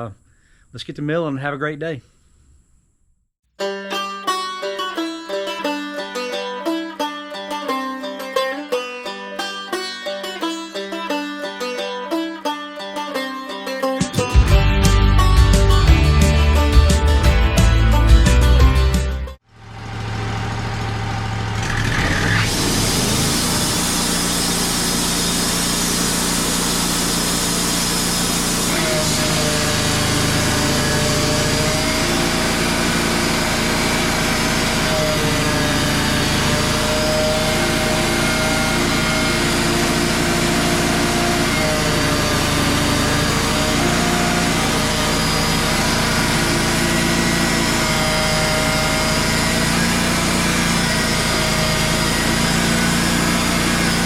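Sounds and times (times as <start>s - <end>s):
sawmill engine droning: 4.1s - 54.0s
wavering saw whine: 19.6s - 54.0s.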